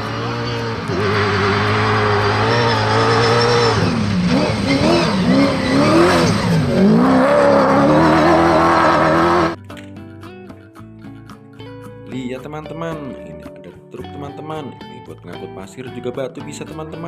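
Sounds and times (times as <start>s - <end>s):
car engine revving: 0.0s - 9.6s.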